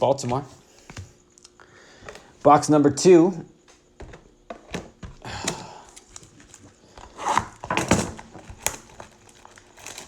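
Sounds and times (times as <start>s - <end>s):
packaging tearing and crinkling: 5.9s - 10.0s.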